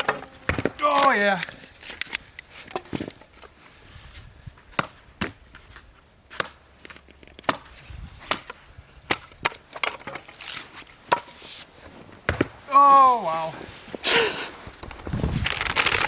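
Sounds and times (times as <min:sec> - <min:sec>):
firewood being chopped: 0:00.0 - 0:03.2, 0:04.7 - 0:10.3, 0:12.2 - 0:12.6.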